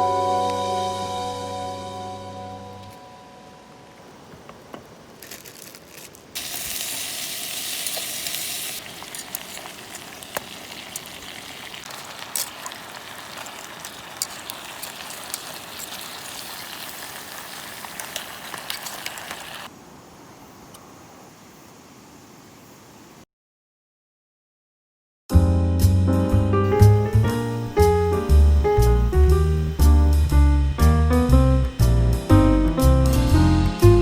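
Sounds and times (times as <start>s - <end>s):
sharp crackles and pops: 4.3s - 19.7s
food sizzling: 6.3s - 19.7s.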